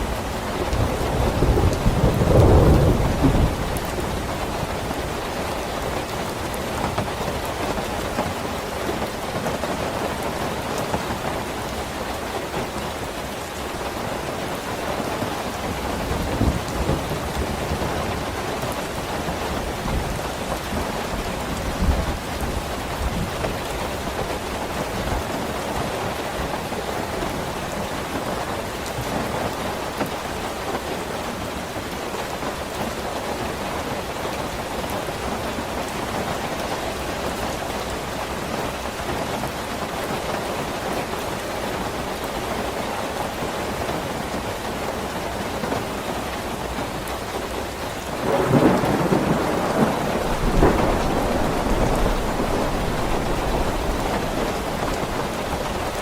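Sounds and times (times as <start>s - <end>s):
thunder rumbling: 0.0s - 6.0s, 15.4s - 18.4s, 48.0s - 56.0s
heavy rain falling: 0.0s - 56.0s.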